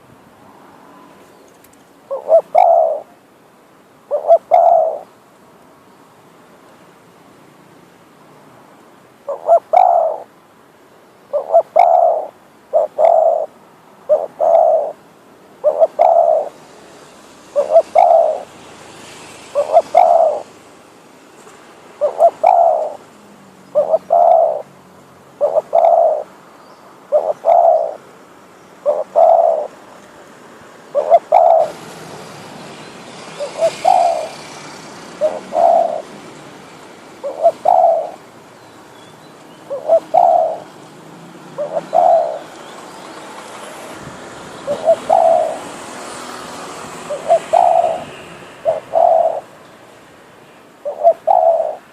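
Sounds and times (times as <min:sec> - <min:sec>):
dove cooing: 0:02.1 - 0:03.2, 0:04.1 - 0:05.1, 0:09.2 - 0:10.3, 0:11.3 - 0:15.0, 0:15.6 - 0:16.6, 0:17.5 - 0:18.5, 0:19.5 - 0:20.6, 0:22.0 - 0:23.1, 0:23.7 - 0:24.7, 0:25.4 - 0:26.3, 0:27.1 - 0:28.0, 0:28.8 - 0:29.8, 0:30.9 - 0:32.1, 0:33.3 - 0:36.2, 0:37.2 - 0:38.3, 0:39.7 - 0:40.8, 0:41.5 - 0:42.6, 0:44.6 - 0:45.8, 0:46.9 - 0:49.6, 0:50.8 - 0:51.9.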